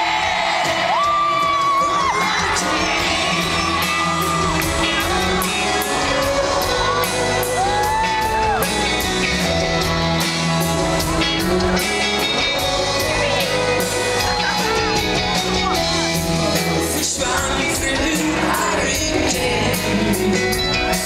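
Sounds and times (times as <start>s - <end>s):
crowd whooping and shouting: 0.0s - 16.5s
live pop-rock band playing: 0.0s - 21.0s.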